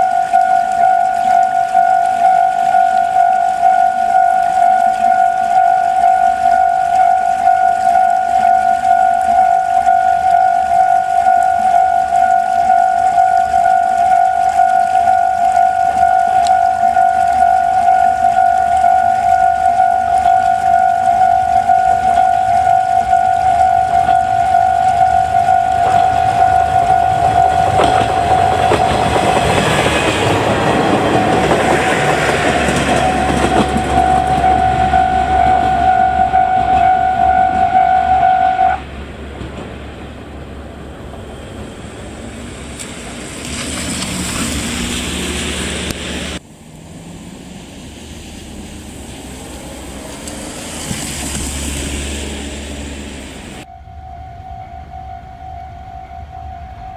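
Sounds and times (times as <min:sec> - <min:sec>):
level-crossing alarm clanging: 0:00.0 - 0:38.8, 0:51.9 - 0:56.9
train rumble: 0:00.0 - 0:56.9
train wheel clatter: 0:20.1 - 0:45.6.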